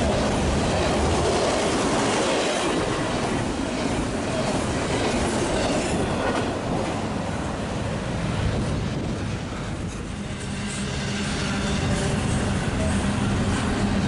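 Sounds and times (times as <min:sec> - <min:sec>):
train wheels clickety-clack: 0:00.0 - 0:07.2, 0:08.4 - 0:14.0.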